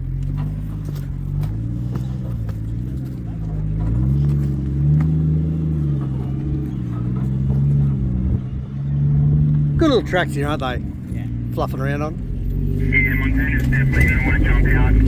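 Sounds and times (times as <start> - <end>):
off-road vehicle engine revving: 0.0 - 15.0.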